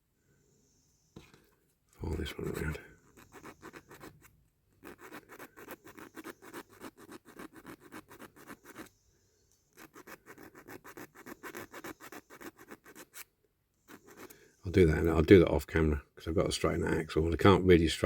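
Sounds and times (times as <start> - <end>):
hand file rasping on metal: 3.0 - 8.9, 9.7 - 13.3, 13.9 - 14.3.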